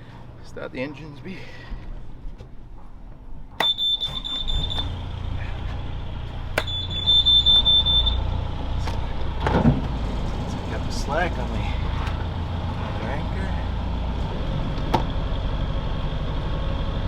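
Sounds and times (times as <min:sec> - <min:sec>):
high alarm beep: 0:03.6 - 0:04.9, 0:06.6 - 0:08.3
low engine idling: 0:03.6 - 0:17.0.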